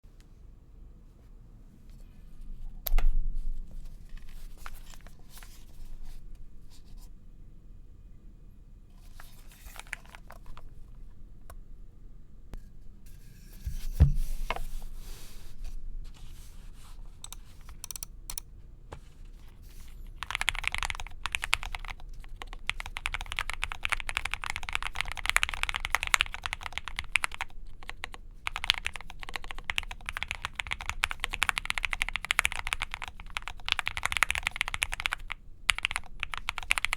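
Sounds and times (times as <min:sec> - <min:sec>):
mechanical keyboard typing: 0:17.2 - 0:18.5, 0:20.1 - 0:36.9.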